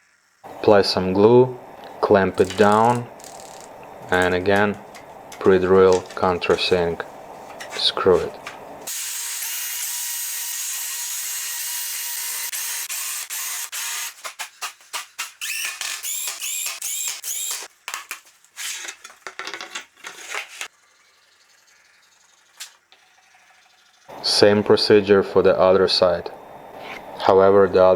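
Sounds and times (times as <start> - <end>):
power drill whining: 2.4 - 6.9, 7.5 - 14.2, 15.4 - 17.7.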